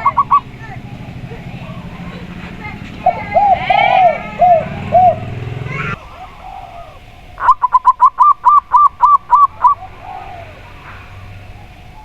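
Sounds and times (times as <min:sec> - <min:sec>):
dove cooing: 0:00.0 - 0:12.0.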